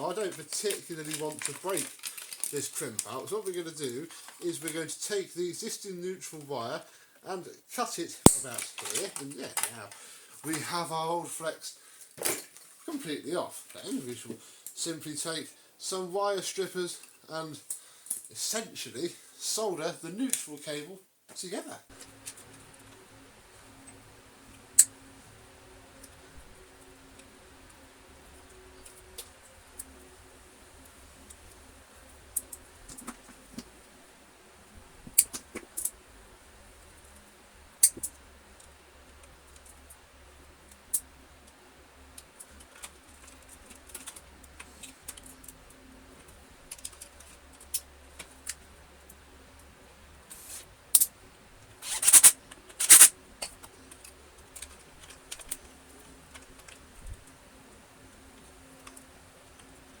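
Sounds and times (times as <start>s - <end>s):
faint steady hum: 0.0s - 60.0s
short rasps: 51.8s - 53.6s.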